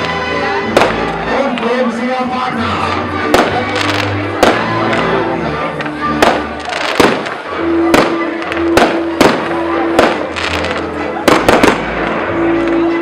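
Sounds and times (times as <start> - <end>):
fireworks bangs: 0.0 - 1.7, 3.2 - 5.2, 5.8 - 12.3
music with long held notes: 0.0 - 13.0.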